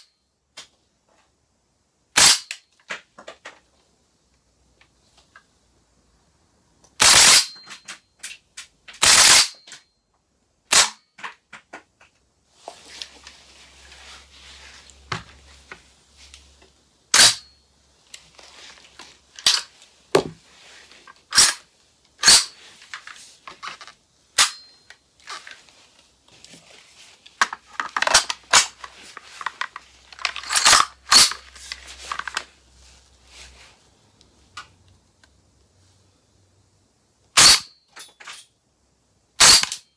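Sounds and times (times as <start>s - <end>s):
airsoft rifle shots: 2.2s - 2.5s, 7.0s - 7.6s, 9.0s - 9.6s, 10.7s - 11.0s, 17.2s - 17.4s, 37.4s - 37.7s, 39.4s - 39.8s.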